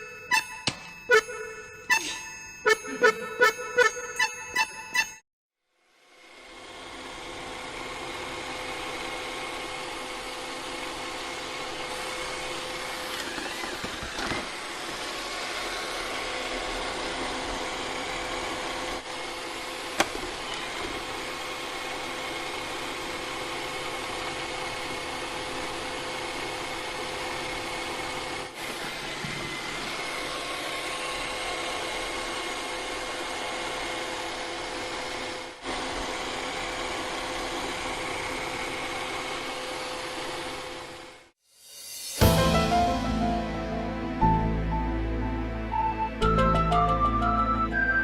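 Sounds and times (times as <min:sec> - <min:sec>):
mechanical whir: 0:06.2 - 0:23.2.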